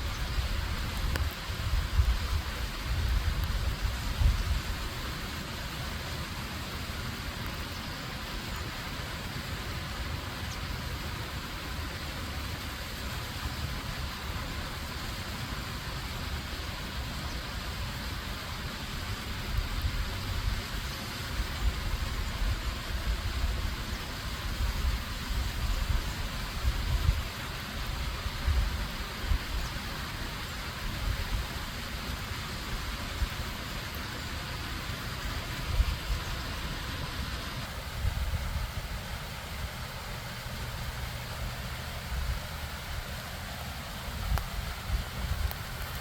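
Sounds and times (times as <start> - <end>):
water rushing: 0.0 - 46.0.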